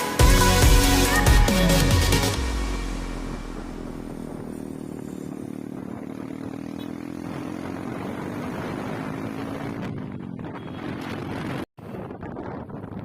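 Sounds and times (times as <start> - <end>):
music track: 0.0 - 4.2
motorcycle engine running: 2.5 - 13.0.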